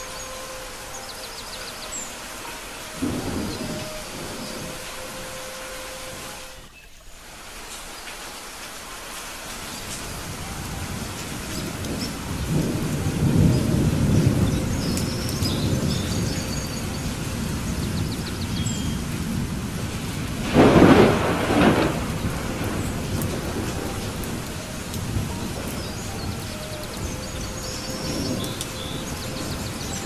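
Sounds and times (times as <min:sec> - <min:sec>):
rolling thunder rumble: 0:00.0 - 0:06.7, 0:09.6 - 0:30.0
rain falling: 0:00.0 - 0:30.0
sharp thunderclap: 0:03.0 - 0:04.8, 0:19.0 - 0:26.4.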